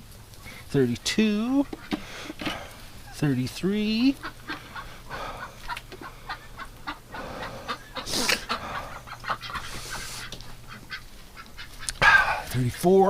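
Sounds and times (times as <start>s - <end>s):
ducks and geese calling: 0.3s - 12.6s
egg cartons clicking and rustling: 0.4s - 12.4s.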